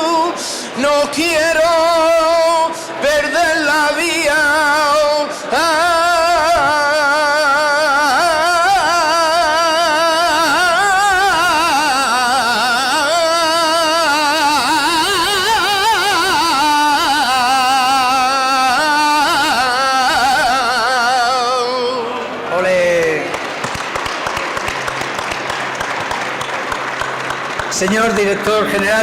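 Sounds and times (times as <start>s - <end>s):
man singing flamenco: 0.0s - 22.2s
audience applause: 22.6s - 29.0s.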